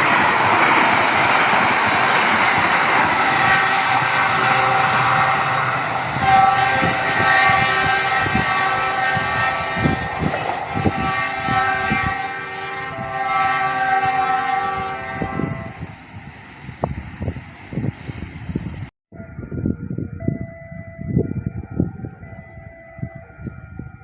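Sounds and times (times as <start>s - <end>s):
train horn blasts: 0.0s - 16.6s
moving train rumble and clatter: 0.0s - 24.0s.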